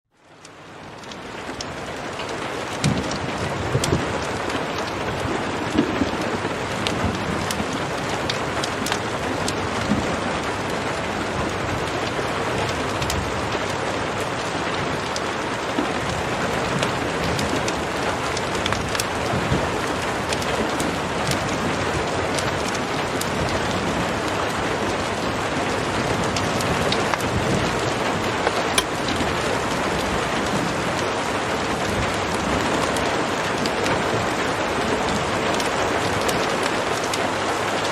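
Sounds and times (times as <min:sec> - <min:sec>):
steady rain falling: 0:00.1 - 0:37.9.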